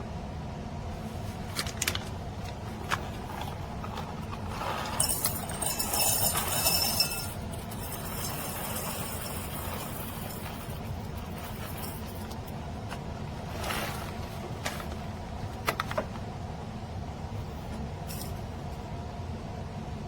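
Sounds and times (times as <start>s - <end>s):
steady low hum: 0.0s - 20.0s
grinder parts clinking and rattling: 1.6s - 16.1s, 18.0s - 18.5s.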